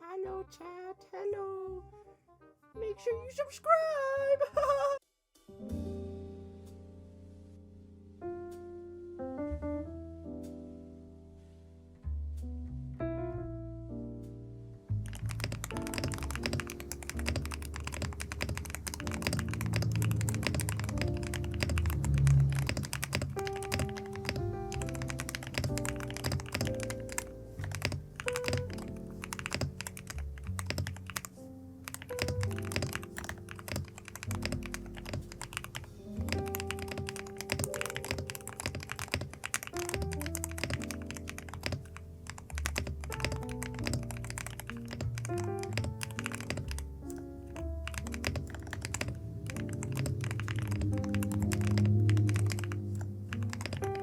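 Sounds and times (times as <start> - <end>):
background music: 0.0 - 54.0
mechanical keyboard typing: 15.0 - 54.0.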